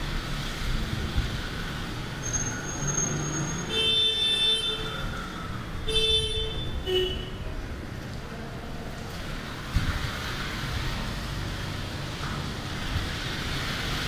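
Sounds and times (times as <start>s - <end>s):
street traffic: 0.0s - 14.0s
vehicle horn honking: 5.9s - 7.4s.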